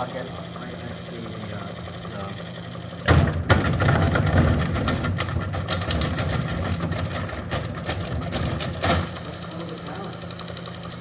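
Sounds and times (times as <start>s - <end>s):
washing machine hum: 0.0s - 11.0s
apples rattling in drum: 3.1s - 9.2s.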